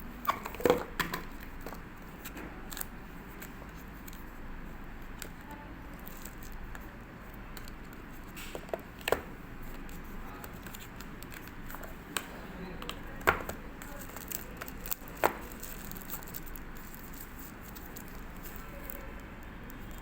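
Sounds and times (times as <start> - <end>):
clicks and taps of handling: 0.2 - 4.2, 7.5 - 16.3.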